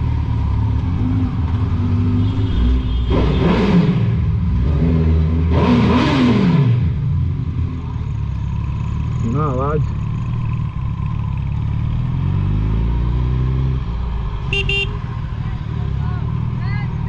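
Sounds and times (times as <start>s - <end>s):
motorcycle engine revving in tunnel: 0.0s - 8.2s.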